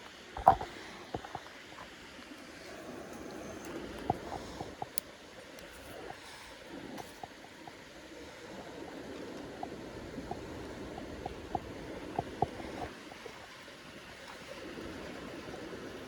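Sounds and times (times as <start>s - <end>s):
water plinks and gurgles: 8.6s - 13.5s.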